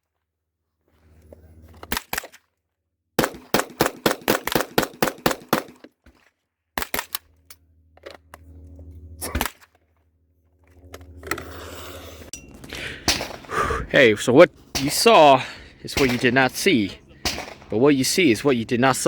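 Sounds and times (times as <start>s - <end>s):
gunshots: 3.2s - 5.8s, 12.8s - 13.6s, 14.7s - 19.0s.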